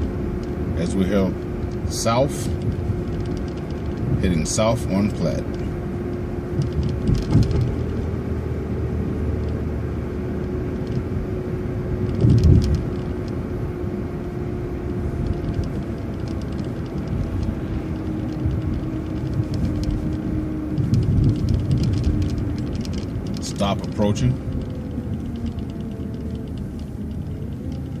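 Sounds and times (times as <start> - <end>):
bus drivetrain rumble: 0.0 - 28.0
constant hum: 0.0 - 28.0
heavy low thump: 6.6 - 8.0
faint clicks: 15.2 - 28.0.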